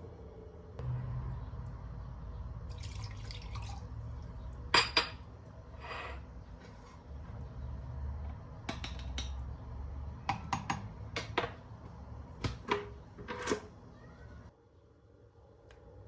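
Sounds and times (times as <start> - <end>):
cups and utensils clinking: 4.7 - 7.0.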